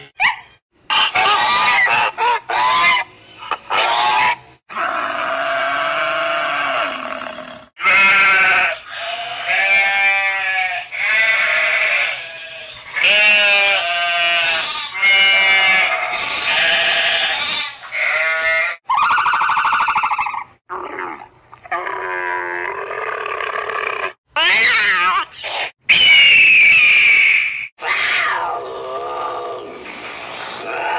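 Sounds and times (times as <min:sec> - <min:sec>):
wavering animal cries: 0:07.8 - 0:22.7, 0:25.9 - 0:29.8.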